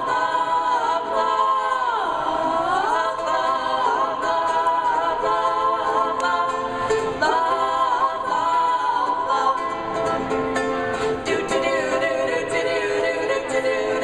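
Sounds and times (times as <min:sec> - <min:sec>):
voices singing in harmony: 0:00.0 - 0:14.0.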